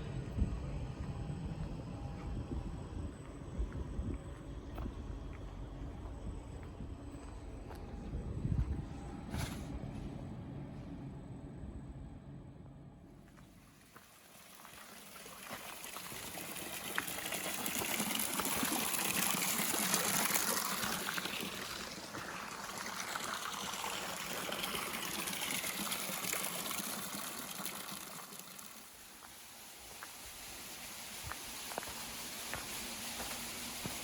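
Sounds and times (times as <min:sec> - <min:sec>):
stream water rushing: 0:14.1 - 0:34.0.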